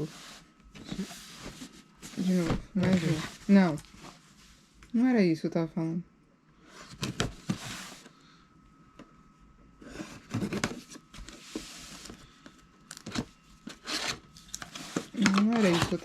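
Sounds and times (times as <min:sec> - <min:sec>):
packaging rustling: 0:12.9 - 0:16.0.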